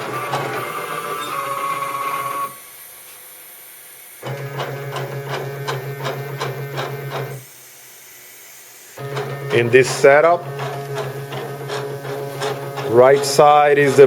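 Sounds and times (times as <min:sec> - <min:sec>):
stepper motors running: 0:00.0 - 0:14.0.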